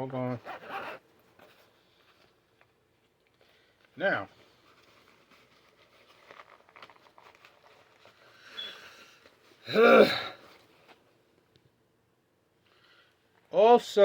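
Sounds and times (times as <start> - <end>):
gear rustling and clicking: 0.4 - 8.4
person groaning: 9.7 - 10.4
person breathing: 12.6 - 13.3.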